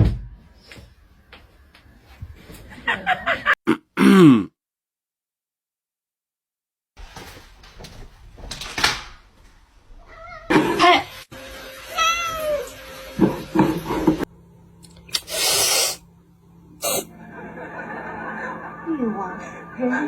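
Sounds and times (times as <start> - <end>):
cat meowing: 10.0 - 10.5, 11.8 - 12.8.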